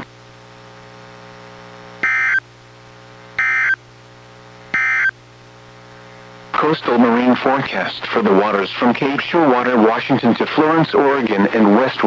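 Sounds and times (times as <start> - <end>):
faint steady hum: 0.0 - 12.0
warbling data tones: 2.0 - 2.4, 3.4 - 3.8, 4.8 - 5.1.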